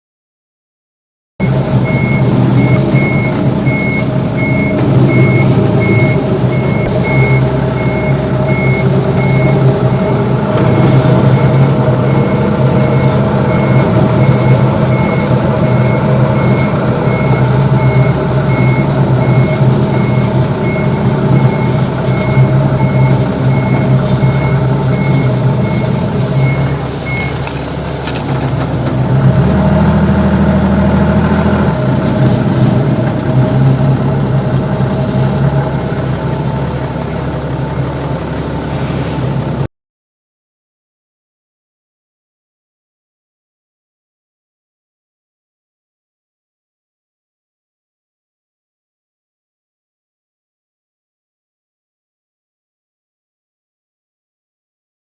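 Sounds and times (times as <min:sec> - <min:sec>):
reversing alarm beeps: 0:01.4 - 0:27.4
forklift diesel engine running: 0:01.4 - 0:39.7.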